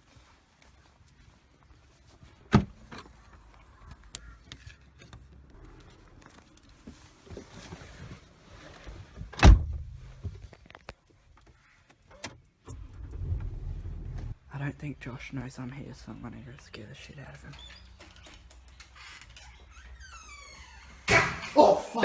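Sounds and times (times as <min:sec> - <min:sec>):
faint low car rumble: 0:12.6 - 0:18.8.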